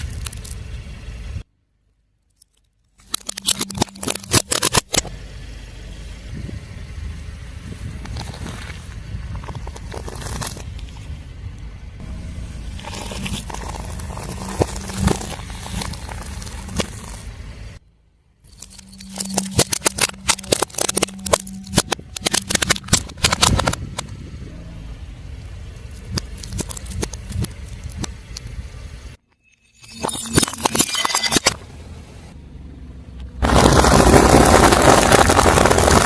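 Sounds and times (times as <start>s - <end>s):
tyre crushing brittle objects: 0.0s - 0.7s, 2.3s - 5.1s, 8.1s - 11.0s, 12.8s - 17.4s, 18.5s - 23.8s, 25.8s - 28.1s, 33.4s - 36.0s
low car engine hum: 0.0s - 29.2s, 31.5s - 36.0s.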